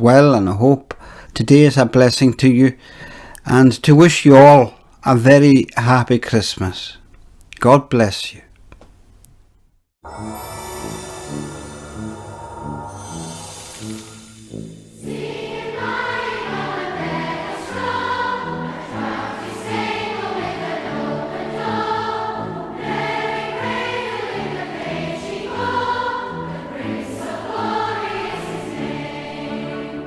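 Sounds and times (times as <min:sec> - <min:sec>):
choir singing: 0:10.1 - 0:30.0.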